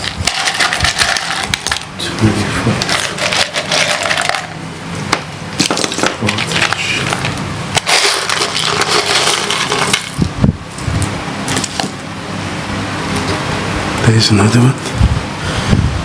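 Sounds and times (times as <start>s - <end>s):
rummaging through electronic parts: 0.0s - 2.0s, 2.8s - 4.6s, 5.6s - 12.0s.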